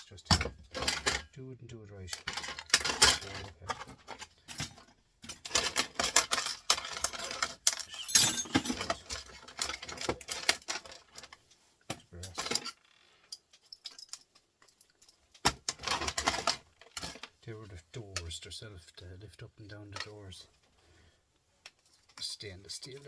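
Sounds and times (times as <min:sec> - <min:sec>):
small metal parts clicking: 0:02.1 - 0:11.4, 0:12.2 - 0:17.3.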